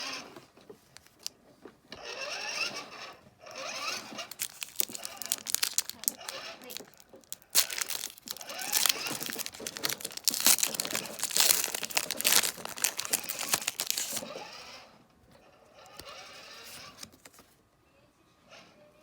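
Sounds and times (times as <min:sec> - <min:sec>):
foil wrapper crinkling and tearing: 0:01.0 - 0:01.3, 0:03.6 - 0:14.4, 0:16.0 - 0:17.5.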